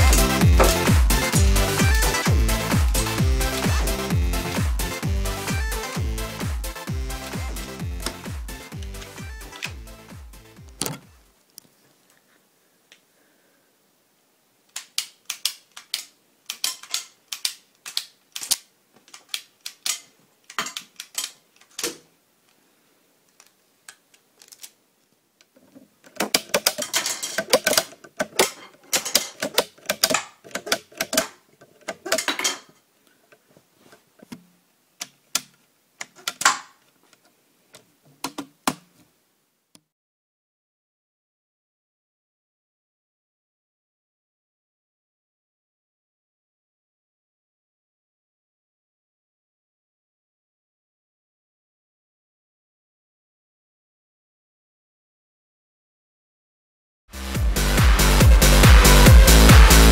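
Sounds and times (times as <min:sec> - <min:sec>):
toy pistol plastic clicking: 0:14.7 - 0:22.0, 0:26.1 - 0:32.2.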